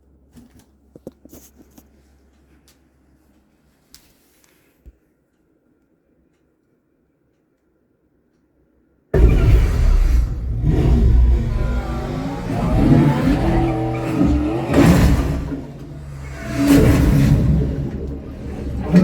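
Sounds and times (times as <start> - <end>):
heavy bass rumble: 9.2 - 19.0.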